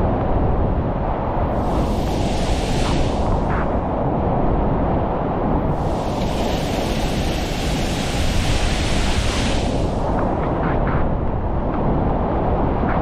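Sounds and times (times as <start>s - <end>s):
waterfall rushing over rocks: 5.9s - 10.0s.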